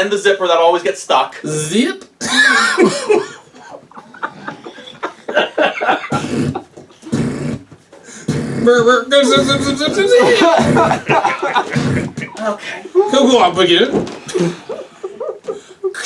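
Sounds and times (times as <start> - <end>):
person making mouth sound effects: 6.1 - 12.4.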